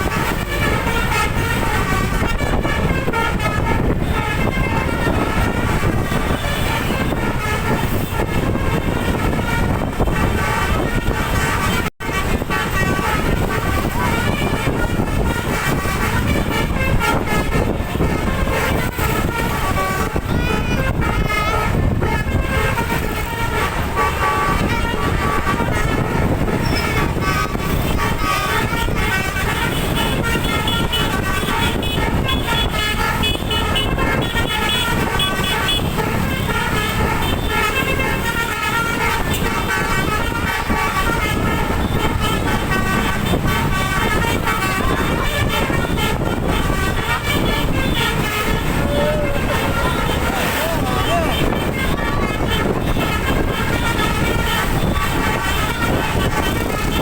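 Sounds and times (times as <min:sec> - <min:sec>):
engine and road noise: 0:00.0 - 0:57.0
musical air horn tooting tune: 0:00.0 - 0:57.0.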